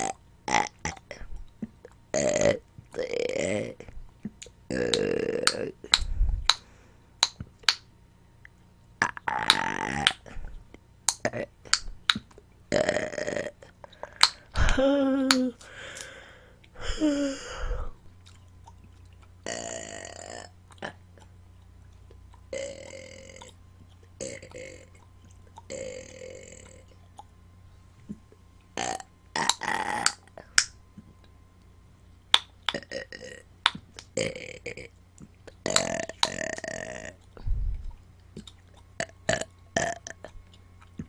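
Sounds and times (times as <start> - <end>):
woman burping: 2.1 - 3.8, 4.7 - 5.8, 12.7 - 13.7, 14.6 - 15.6, 19.4 - 21.0, 22.5 - 23.4, 24.2 - 24.9, 28.8 - 30.2.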